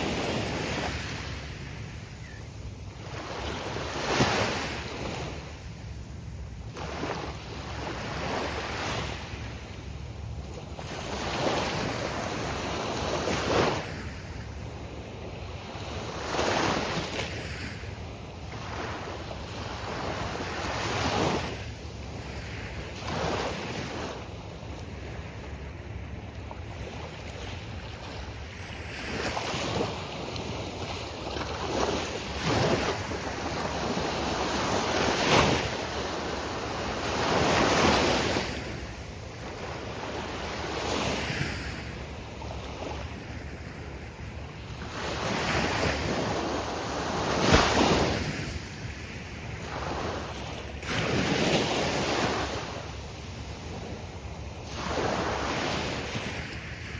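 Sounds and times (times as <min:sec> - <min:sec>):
surf breaking on beach: 0:47.0 - 0:49.0.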